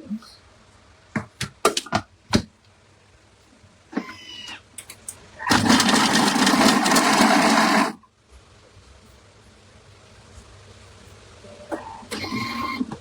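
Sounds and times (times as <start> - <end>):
food processor blades spinning: 5.5 - 8.0.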